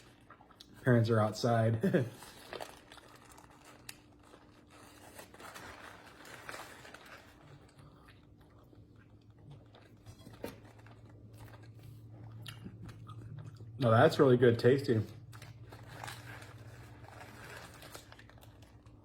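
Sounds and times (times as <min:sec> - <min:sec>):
person chewing crunchy food: 0:00.0 - 0:00.8, 0:02.1 - 0:13.8
low steady hum: 0:00.0 - 0:19.0
small crackles and clicks: 0:02.4 - 0:08.8.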